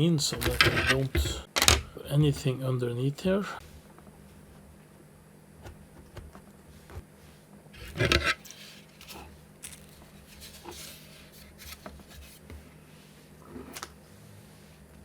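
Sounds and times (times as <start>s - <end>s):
objects clicking and rubbing: 0.3s - 1.8s, 7.8s - 12.3s
scrape on workbench: 7.8s - 9.3s.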